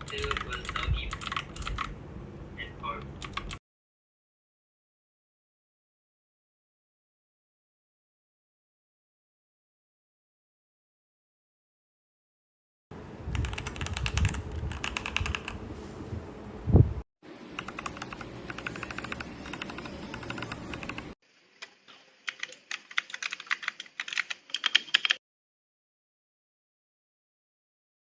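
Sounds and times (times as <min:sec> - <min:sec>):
mechanical keyboard typing: 0:00.0 - 0:01.9, 0:03.2 - 0:03.6, 0:13.3 - 0:15.6, 0:17.6 - 0:21.2, 0:22.3 - 0:25.2.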